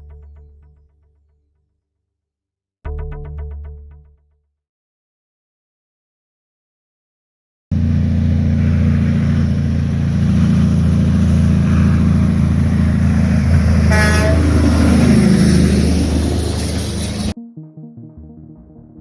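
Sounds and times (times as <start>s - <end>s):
heavy vehicle engine running: 7.7s - 17.4s
short horn toot: 13.8s - 14.6s.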